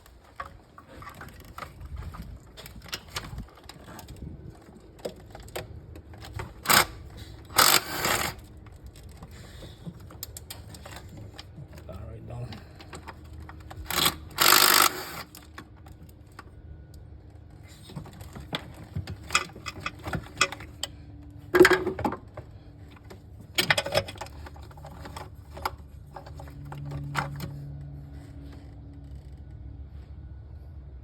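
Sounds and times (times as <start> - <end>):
metallic clicks of hand tools: 13.8 - 15.4.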